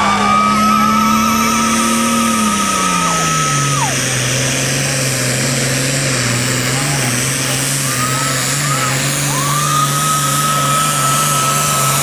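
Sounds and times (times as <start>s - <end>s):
high turbo whistle: 0.0s - 4.3s, 7.8s - 12.0s
diesel tractor engine running: 0.0s - 12.0s.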